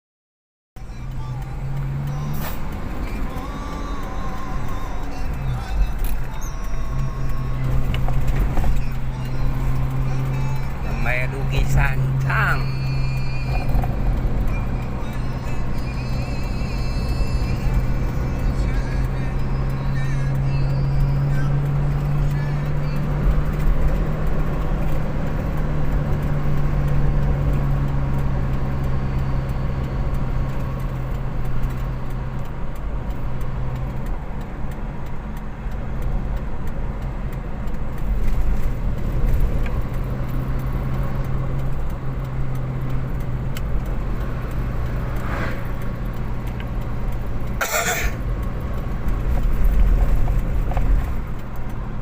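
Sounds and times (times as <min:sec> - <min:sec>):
car engine droning: 0:00.8 - 0:52.0.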